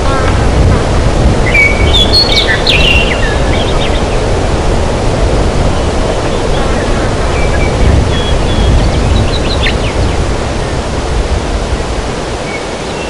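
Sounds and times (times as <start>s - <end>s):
low rushing background: 0.0s - 13.0s
birds chirping and whistling: 1.5s - 4.2s, 6.3s - 10.2s.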